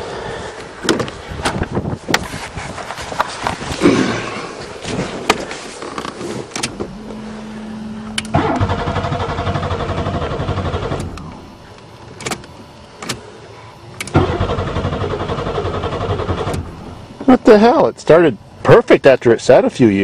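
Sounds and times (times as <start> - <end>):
steady hum: 0.0 - 20.0
car engine cranking without firing: 5.8 - 13.3, 13.9 - 17.6.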